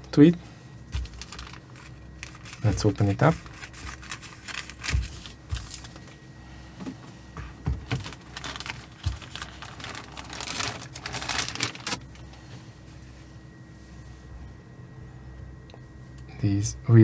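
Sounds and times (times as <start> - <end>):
plastic bag rustling: 0.8 - 6.2, 6.8 - 12.5.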